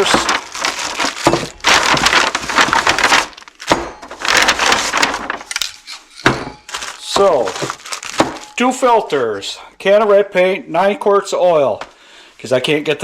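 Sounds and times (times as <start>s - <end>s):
packaging rustling and crinkling: 0.0s - 8.8s.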